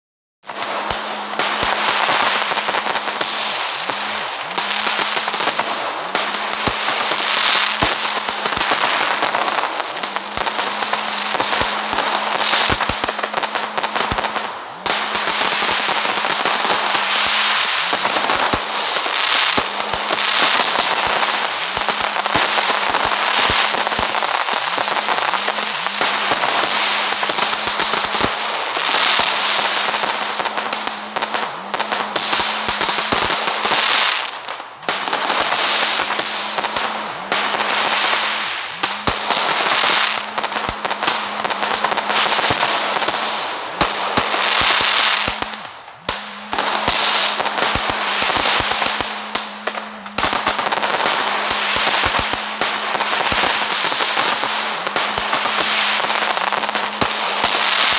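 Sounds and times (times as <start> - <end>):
fireworks crackling and popping: 0.4 - 57.9.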